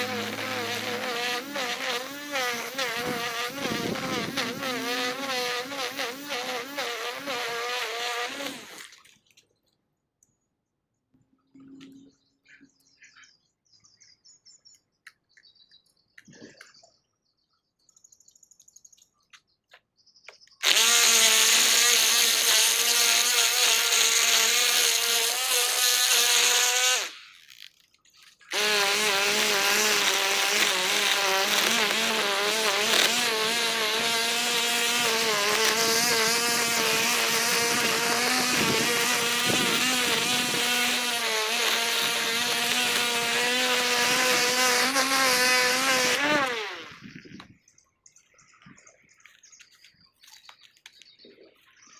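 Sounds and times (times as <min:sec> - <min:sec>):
string trimmer engine running: 0:00.0 - 0:08.9, 0:20.6 - 0:27.8, 0:28.5 - 0:47.1.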